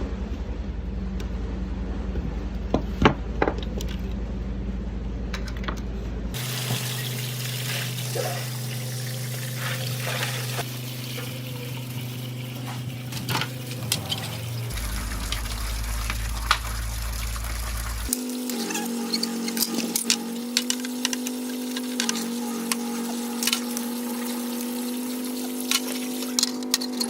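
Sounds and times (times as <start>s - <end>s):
water running from a tap: 6.4s - 18.5s, 19.6s - 26.4s
steady low hum: 7.1s - 18.1s.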